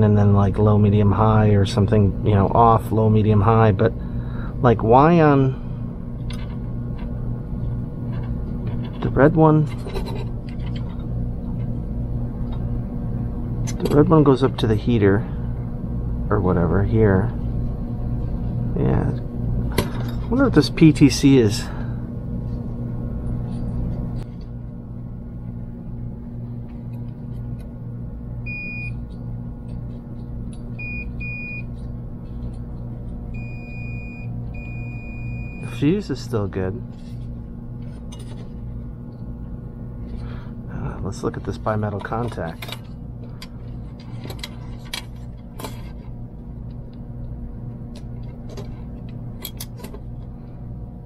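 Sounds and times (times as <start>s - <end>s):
steady low hum: 0.0s - 51.0s
multimeter continuity beeps: 28.4s - 29.0s, 30.8s - 31.7s, 33.3s - 35.8s.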